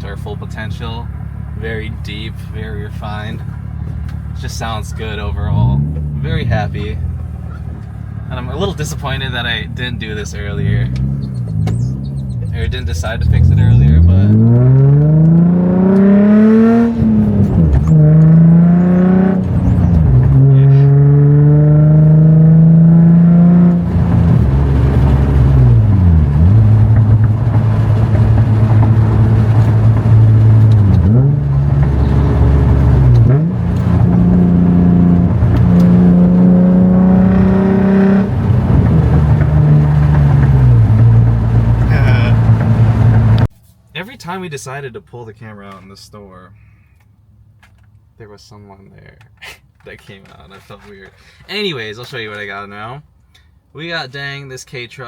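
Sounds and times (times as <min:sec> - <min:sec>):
car engine accelerating through gears: 0:01.1 - 0:43.5.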